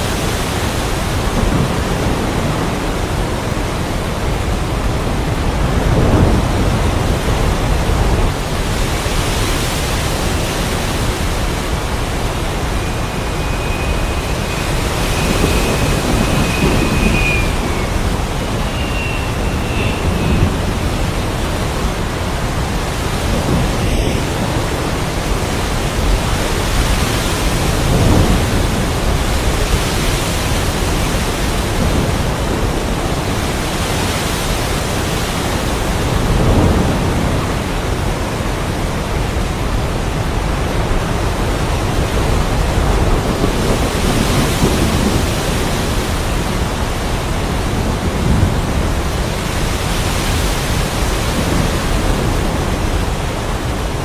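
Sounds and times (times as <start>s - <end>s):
heavy rain pouring: 0.0s - 54.0s
rolls of thunder: 11.3s - 21.7s.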